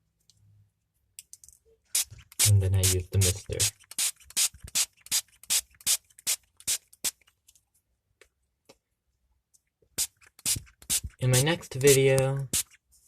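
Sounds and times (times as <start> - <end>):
hand-pump mister spritzing water: 10.0 - 11.2.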